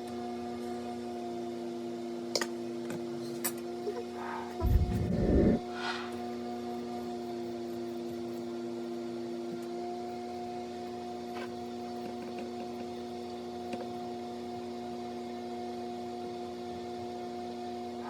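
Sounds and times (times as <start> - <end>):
steady hum: 4.5 - 6.1.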